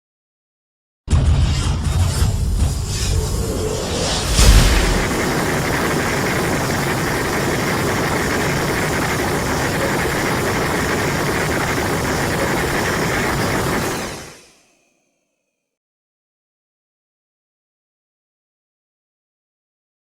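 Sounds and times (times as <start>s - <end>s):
loud rushing hiss: 2.2s - 14.8s.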